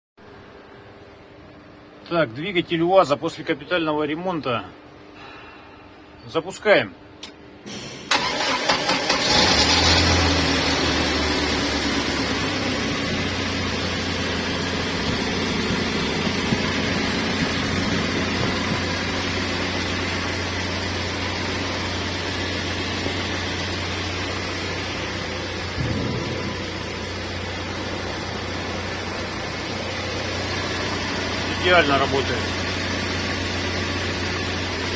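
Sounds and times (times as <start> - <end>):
engine idling: 7.7 - 34.9.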